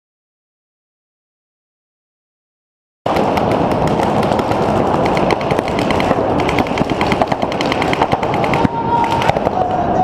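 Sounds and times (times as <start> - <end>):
paintball markers firing: 3.1 - 9.7.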